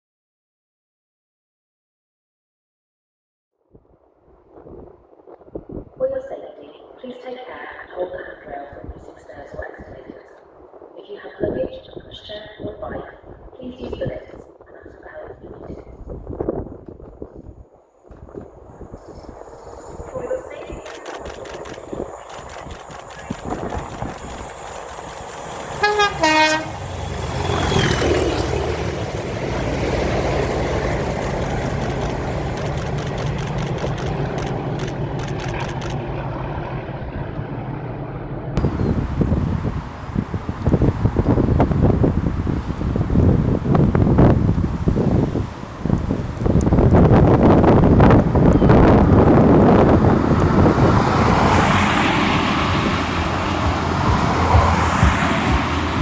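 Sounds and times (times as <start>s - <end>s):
wind buffeting microphone: 3.7s - 56.0s
diesel engine rumbling: 19.2s - 56.0s
locomotive two-tone horn: 25.7s - 27.8s.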